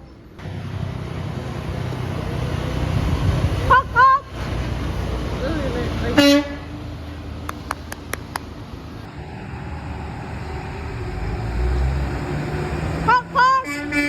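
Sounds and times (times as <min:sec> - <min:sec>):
vehicle engine rumble: 0:00.0 - 0:14.0.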